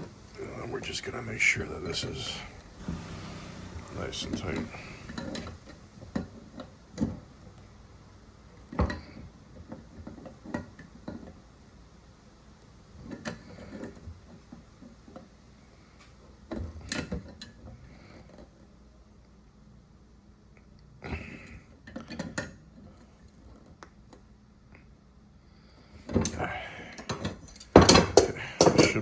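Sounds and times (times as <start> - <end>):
tools knocking on metal fittings: 27.0 - 29.0.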